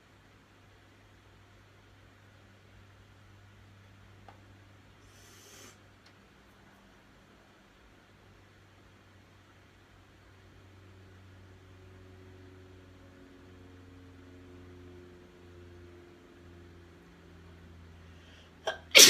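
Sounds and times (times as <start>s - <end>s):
faint steady hum: 0.0s - 19.0s
woman sneezing: 18.7s - 19.0s.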